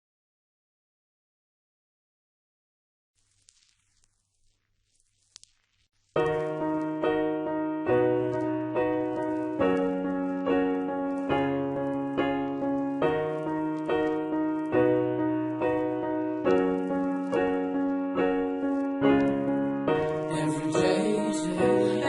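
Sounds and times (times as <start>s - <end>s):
slow piano chords: 6.2s - 22.0s.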